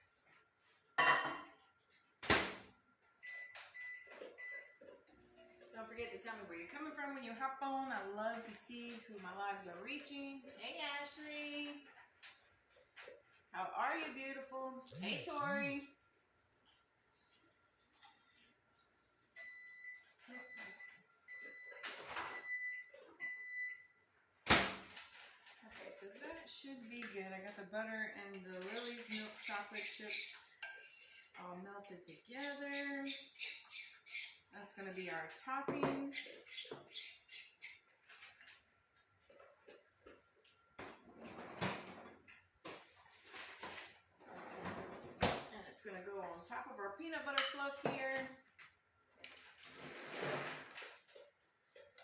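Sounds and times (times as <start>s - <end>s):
microwave beeping: 19.4s - 24.0s
utensils clinking against a bowl: 28.4s - 31.4s.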